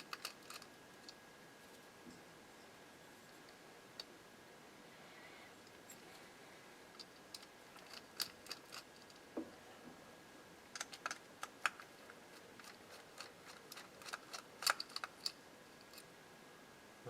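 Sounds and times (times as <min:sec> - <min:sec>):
screwdriver and metal parts clicking: 0:00.0 - 0:01.2, 0:07.0 - 0:09.2, 0:10.8 - 0:16.1.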